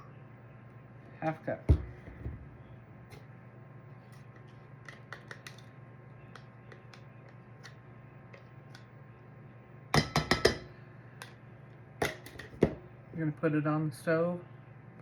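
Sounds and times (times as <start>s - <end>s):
low steady hum: 0.0s - 15.0s
kitchen utensils clicking and tapping: 10.0s - 10.7s
utensil clanking against saucepan: 10.0s - 10.7s.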